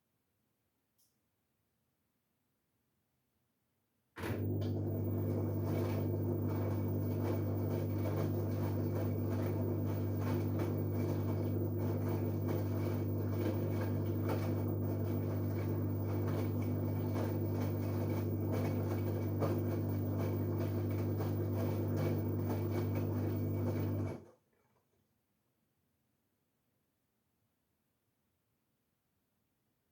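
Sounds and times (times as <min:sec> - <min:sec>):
washing machine humming: 0:04.2 - 0:24.4.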